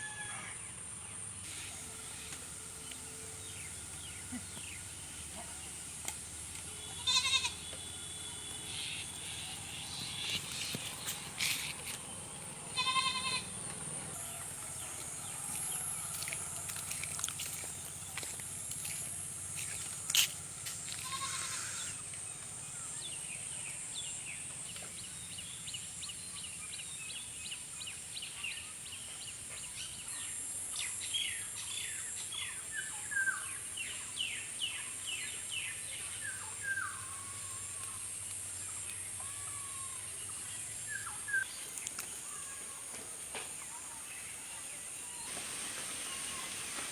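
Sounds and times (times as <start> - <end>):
high insect drone: 0.1 - 24.4
goat bleating: 6.9 - 7.6, 12.7 - 13.5, 21.0 - 21.9.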